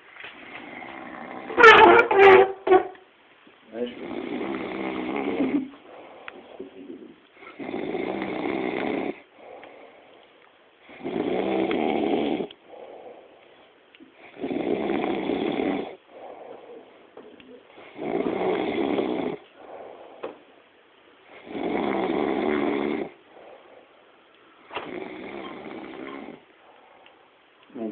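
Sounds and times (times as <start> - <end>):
quiet breathing: 3.7 - 21.5, 22.5 - 27.8
man snoring: 3.8 - 5.7, 7.5 - 9.2, 10.9 - 12.6, 14.3 - 16.0, 17.8 - 19.4, 21.4 - 23.2, 24.8 - 26.4.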